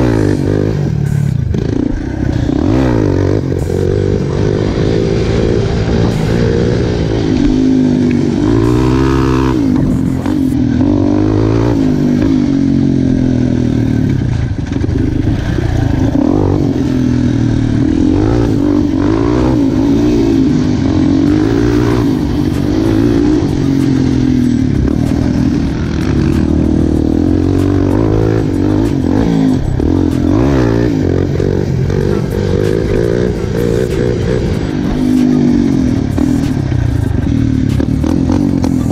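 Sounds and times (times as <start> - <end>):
quad engine revving: 0.0 - 38.9.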